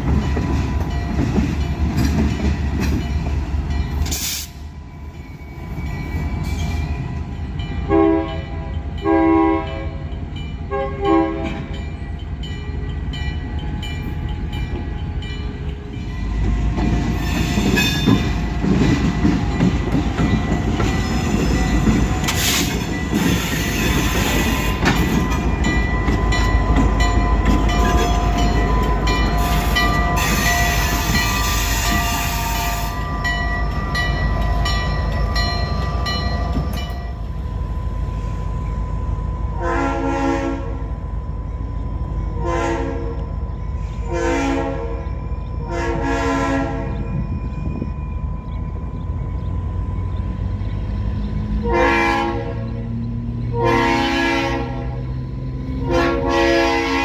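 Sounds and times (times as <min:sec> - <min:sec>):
train clattering over rails: 0:00.0 - 0:57.0
locomotive air horn blasts: 0:07.8 - 0:10.0, 0:10.7 - 0:11.7, 0:29.5 - 0:33.0, 0:39.6 - 0:40.9, 0:42.4 - 0:43.2, 0:44.0 - 0:45.0, 0:45.6 - 0:47.0, 0:51.6 - 0:52.8, 0:53.5 - 0:55.0, 0:55.8 - 0:57.0
wheel squeal: 0:17.1 - 0:18.4.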